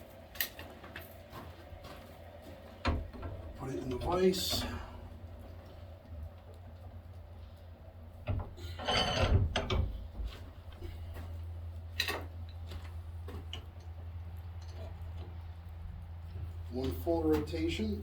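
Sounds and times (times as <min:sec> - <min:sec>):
steel scraping in a vise: 0:08.6 - 0:09.5.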